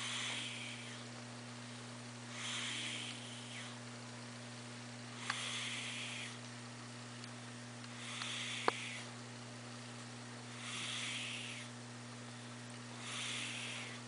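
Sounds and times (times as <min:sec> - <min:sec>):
cat snoring: 0:00.0 - 0:01.1, 0:02.3 - 0:03.8, 0:05.2 - 0:06.4, 0:08.0 - 0:09.1, 0:10.5 - 0:11.8, 0:12.9 - 0:14.0
steady low hum: 0:00.0 - 0:14.0.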